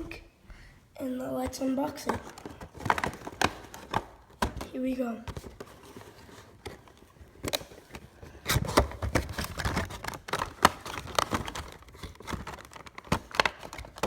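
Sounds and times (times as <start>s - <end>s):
packaging rustling and clicking: 1.5s - 14.0s.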